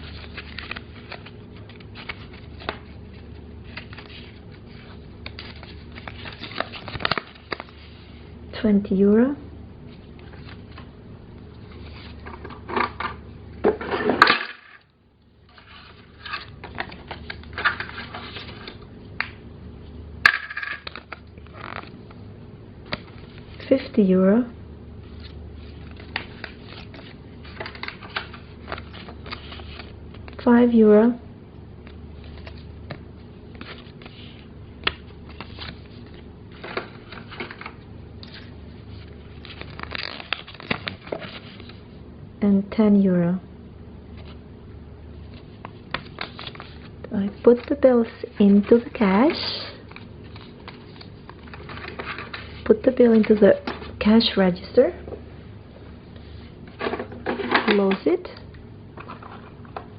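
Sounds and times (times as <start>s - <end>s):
paper banknotes rustling: 0.0s - 8.2s, 15.5s - 18.9s, 20.8s - 22.2s, 25.0s - 30.4s, 31.8s - 41.9s, 45.1s - 53.5s.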